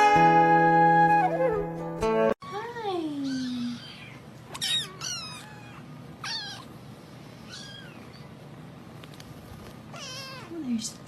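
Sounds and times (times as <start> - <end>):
cat meowing: 3.2 - 6.7, 7.4 - 8.1, 9.9 - 10.6.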